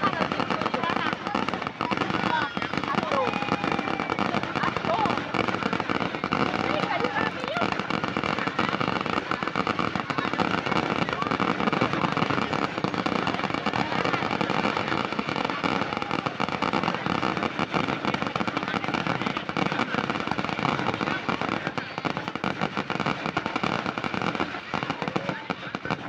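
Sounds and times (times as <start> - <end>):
fireworks bangs and crackles: 0.0 - 26.0.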